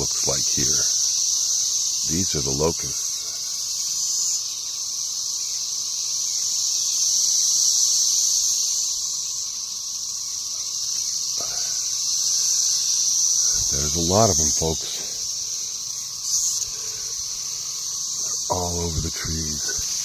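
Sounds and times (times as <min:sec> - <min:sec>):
cicadas droning buzz: 0:00.0 - 0:20.0.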